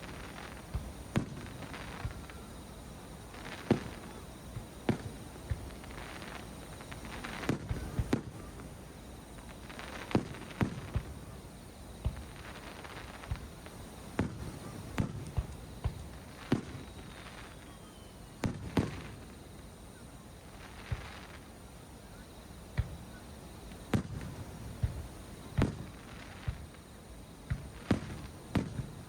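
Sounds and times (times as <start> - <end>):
fireworks bangs: 0.0 - 19.7, 22.7 - 26.8, 27.4 - 29.0
fireworks crackling: 0.0 - 29.0
faint falling whistle: 16.6 - 19.0.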